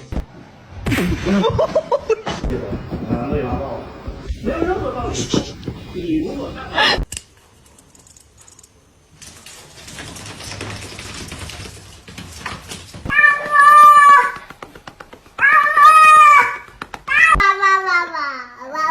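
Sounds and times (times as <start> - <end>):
faint rustling: 2.4 - 8.0
cat meowing: 13.1 - 14.4, 15.4 - 17.4.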